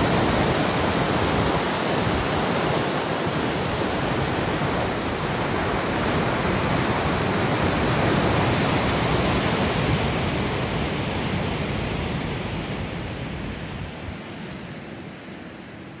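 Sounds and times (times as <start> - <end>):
sea water rushing along hull: 0.0 - 15.9.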